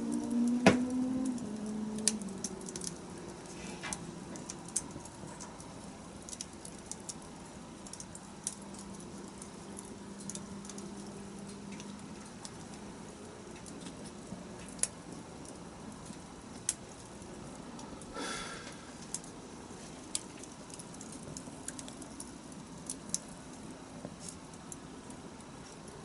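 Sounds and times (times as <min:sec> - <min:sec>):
faint steady hiss: 0:00.0 - 0:26.0
wood fire crackling: 0:00.0 - 0:26.0.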